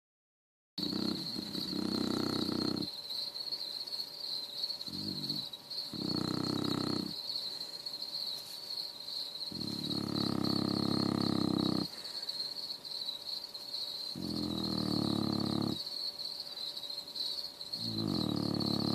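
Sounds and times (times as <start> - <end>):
dog snoring: 0.8 - 2.9, 4.9 - 7.2, 9.5 - 12.0, 14.1 - 15.8, 17.8 - 18.9.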